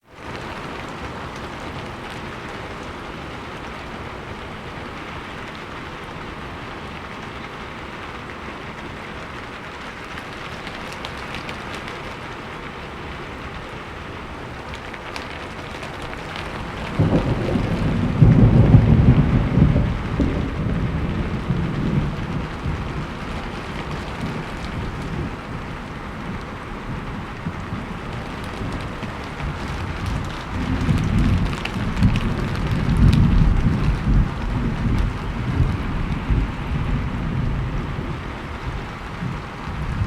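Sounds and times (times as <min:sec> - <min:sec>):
steady rain: 0:00.0 - 0:40.0
deep rumble of thunder: 0:15.4 - 0:40.0.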